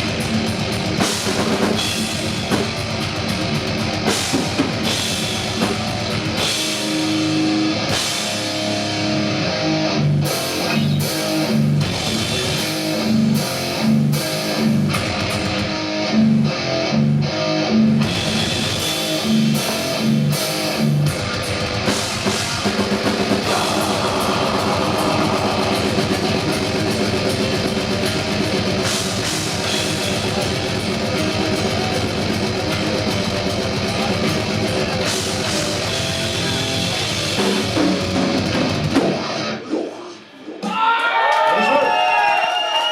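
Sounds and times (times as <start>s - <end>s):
heavy metal band playing live: 0.0s - 39.6s.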